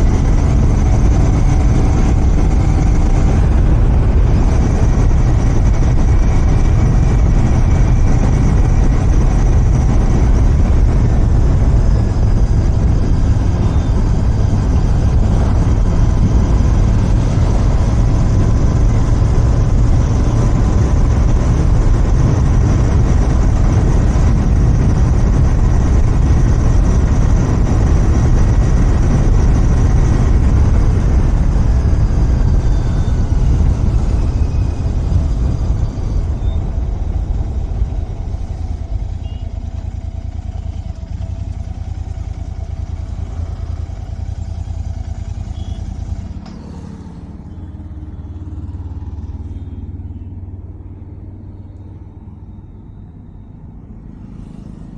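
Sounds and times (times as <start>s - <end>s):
motorcycle engine low rumble: 0.0s - 54.9s.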